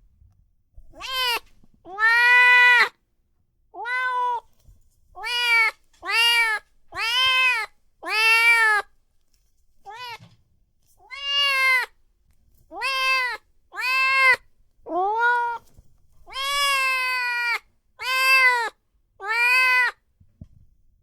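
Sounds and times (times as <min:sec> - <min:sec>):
kitten meowing: 0:00.9 - 0:02.9, 0:03.8 - 0:04.5, 0:05.2 - 0:08.8, 0:09.9 - 0:10.3, 0:11.0 - 0:11.9, 0:12.7 - 0:15.7, 0:16.3 - 0:20.0.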